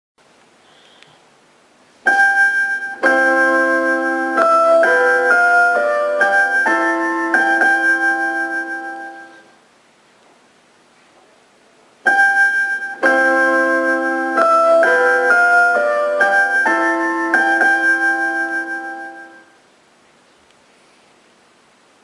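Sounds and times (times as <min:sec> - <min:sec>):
faint radio hiss: 0:00.2 - 0:22.0
bell-like electronic keyboard melody: 0:02.1 - 0:09.5, 0:12.1 - 0:19.6.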